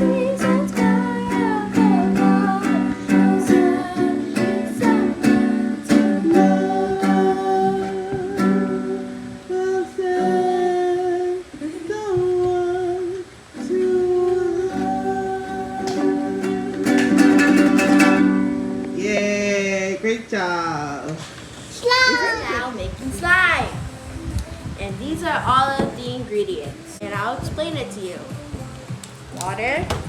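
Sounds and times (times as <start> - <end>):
person singing slow song: 0.0 - 19.7, 28.2 - 29.4
ukulele strumming chords: 0.0 - 20.0.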